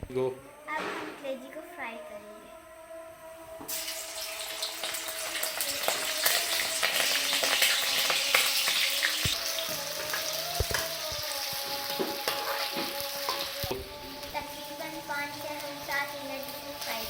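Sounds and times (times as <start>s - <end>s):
liver sizzling in hot oil: 3.7s - 17.0s.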